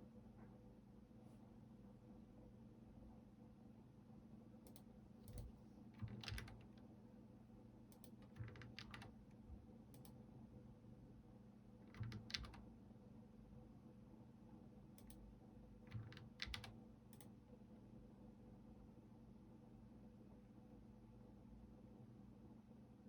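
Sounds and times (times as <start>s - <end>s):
computer keyboard typing: 4.7s - 6.8s, 8.0s - 9.2s, 11.9s - 12.6s, 15.9s - 17.3s.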